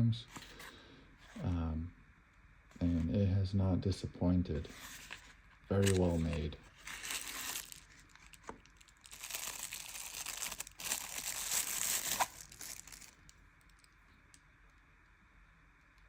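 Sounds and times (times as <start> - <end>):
crinkling and rustling handling noise: 0.2 - 1.5, 4.6 - 14.4.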